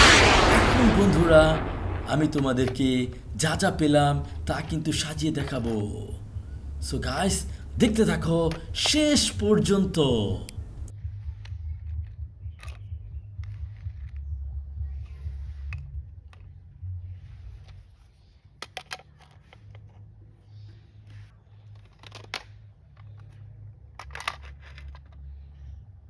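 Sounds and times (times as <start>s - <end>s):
low rumble: 0.0s - 10.9s.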